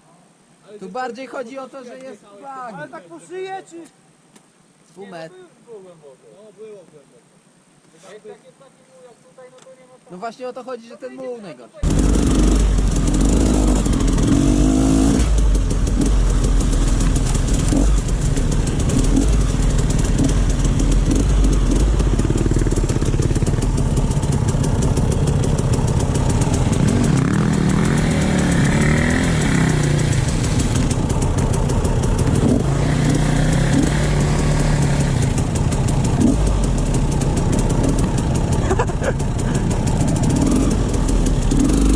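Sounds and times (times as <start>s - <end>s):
dirt bike engine revving: 11.8s - 41.9s.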